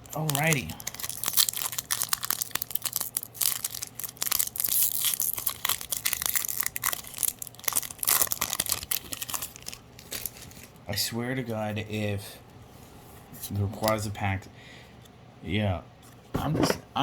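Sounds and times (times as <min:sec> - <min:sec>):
foil wrapper crinkling: 0:00.0 - 0:10.8.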